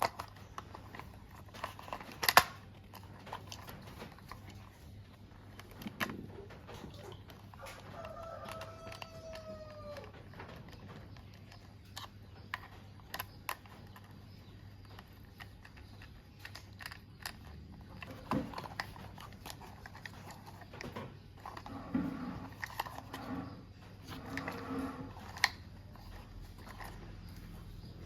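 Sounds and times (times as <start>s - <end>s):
plastic toy pieces clicking: 0.0s - 4.8s, 5.4s - 21.8s.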